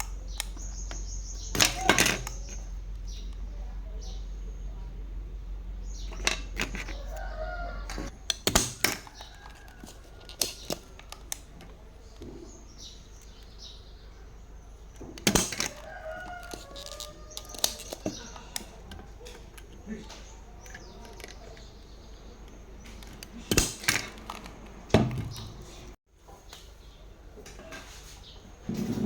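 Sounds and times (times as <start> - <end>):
small hard parts clicking: 0.0 - 3.4, 6.0 - 12.6, 14.9 - 25.5
chicken calling: 6.9 - 8.1.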